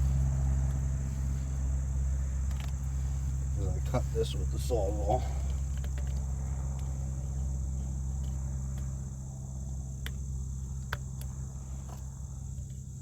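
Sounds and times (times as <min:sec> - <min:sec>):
high-pitched insect drone: 0:00.0 - 0:10.7
low steady hum: 0:00.0 - 0:13.0.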